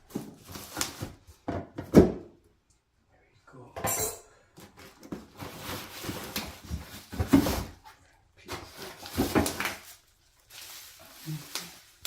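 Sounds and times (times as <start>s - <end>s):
packaging rustling: 4.8s - 12.0s.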